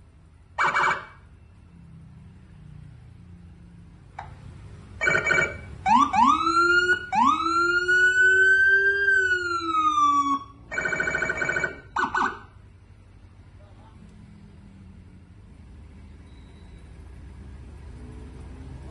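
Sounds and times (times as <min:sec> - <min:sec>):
police siren wailing: 0:00.6 - 0:01.3, 0:05.0 - 0:12.6
siren buzzing blast: 0:05.0 - 0:12.6.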